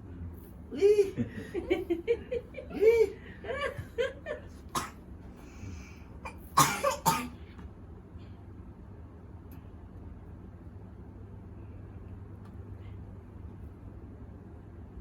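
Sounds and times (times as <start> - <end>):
person coughing: 4.8 - 5.0, 6.3 - 7.4.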